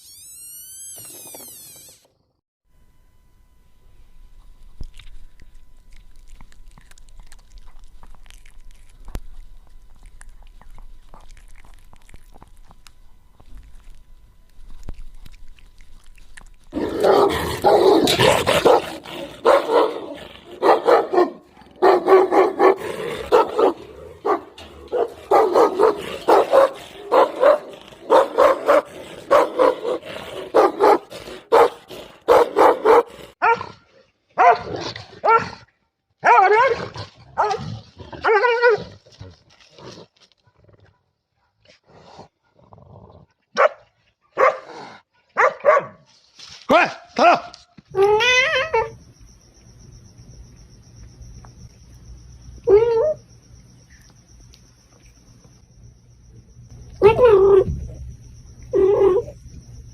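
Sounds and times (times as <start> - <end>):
dog barking: 16.9 - 33.8, 34.4 - 35.6, 36.2 - 38.8, 43.6 - 43.8, 44.4 - 46.0.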